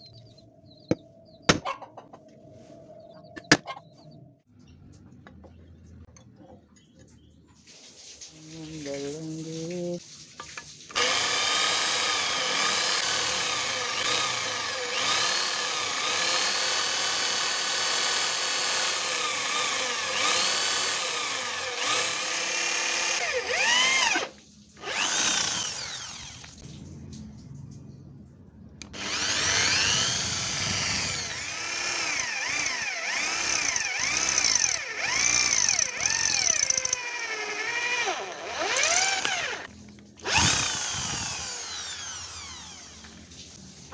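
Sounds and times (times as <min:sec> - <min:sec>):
angle grinder cutting: 0:10.9 - 0:26.6, 0:28.9 - 0:43.2.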